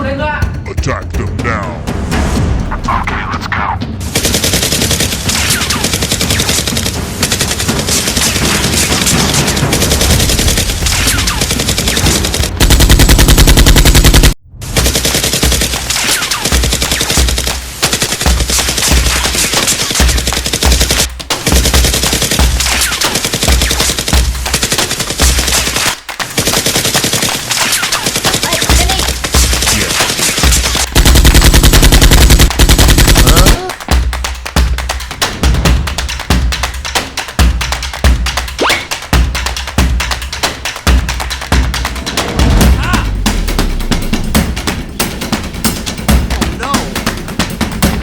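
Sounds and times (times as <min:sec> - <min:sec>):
automatic gunfire: 0:04.0 - 0:33.8.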